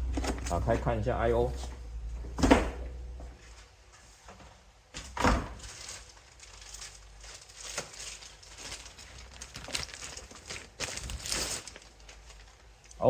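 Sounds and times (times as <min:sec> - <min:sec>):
packaging rustling: 0:05.0 - 0:13.0.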